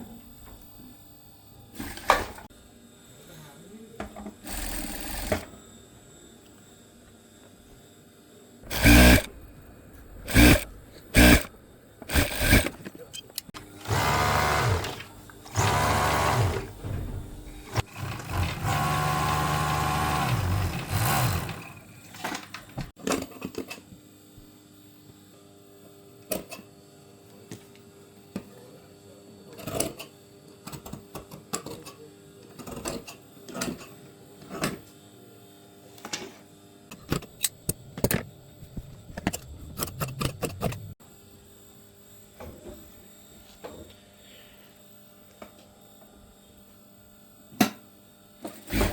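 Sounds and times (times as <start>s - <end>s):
electric sewing machine stitching: 1.7s - 2.4s, 4.4s - 5.5s, 8.6s - 9.4s, 10.2s - 12.8s, 13.8s - 16.8s, 17.5s - 22.1s, 48.5s - 48.9s.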